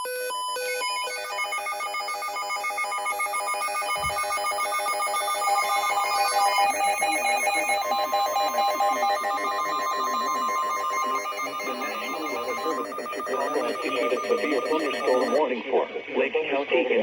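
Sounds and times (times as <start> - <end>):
warbling electronic alarm: 0.0 - 15.4.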